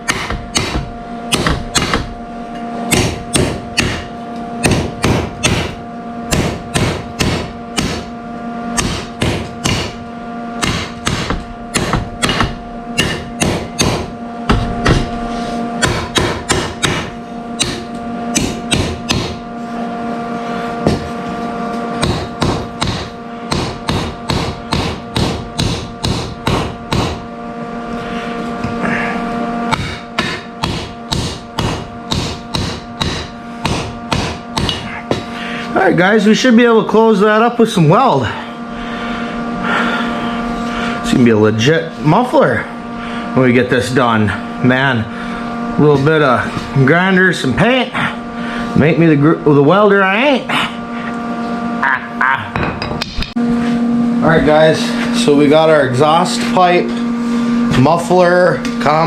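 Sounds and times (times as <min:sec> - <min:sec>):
hammer striking metal pipe: 0:00.0 - 0:02.1, 0:02.9 - 0:08.1, 0:08.8 - 0:10.0, 0:10.6 - 0:15.2, 0:15.8 - 0:19.4, 0:22.0 - 0:27.2, 0:29.7 - 0:35.3, 0:52.5 - 0:53.4.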